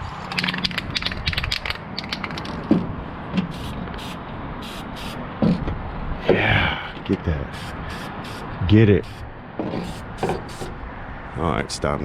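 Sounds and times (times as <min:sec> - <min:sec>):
spray can rattling: 0:00.3 - 0:02.7, 0:03.5 - 0:05.2, 0:09.8 - 0:10.7
spray paint hissing: 0:03.4 - 0:05.2, 0:07.5 - 0:10.8.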